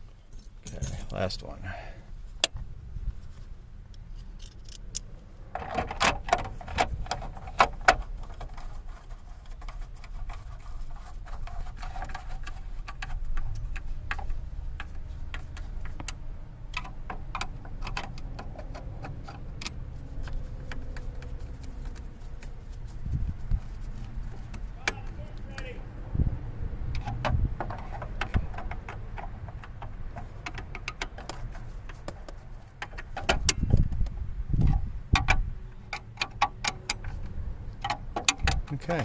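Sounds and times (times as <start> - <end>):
hand tool clicking and tapping: 12.9 - 22.5, 26.9 - 34.1.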